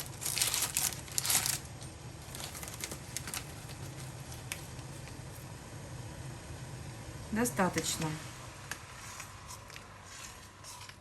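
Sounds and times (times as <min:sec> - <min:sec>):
dry leaves rustling: 0:00.0 - 0:04.7
low steady hum: 0:00.0 - 0:11.0.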